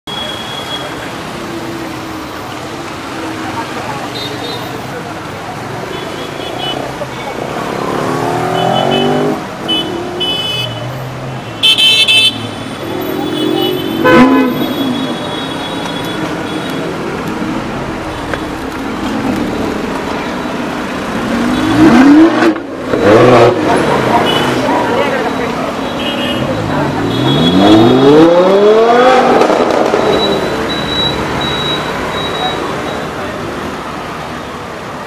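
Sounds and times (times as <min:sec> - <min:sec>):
car horns tooting: 0:08.1 - 0:16.9, 0:21.4 - 0:28.3
sports car engine revving: 0:21.0 - 0:24.6, 0:26.6 - 0:30.4.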